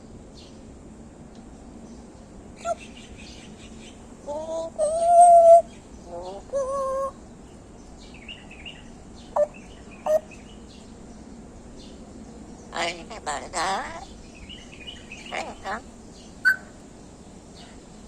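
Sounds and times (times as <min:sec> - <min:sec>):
parrot chirps: 0:12.8 - 0:14.1, 0:15.0 - 0:15.8, 0:16.4 - 0:16.7
parrot squawking: 0:12.8 - 0:14.1, 0:15.2 - 0:16.7
parrot whistling calls: 0:16.4 - 0:16.7.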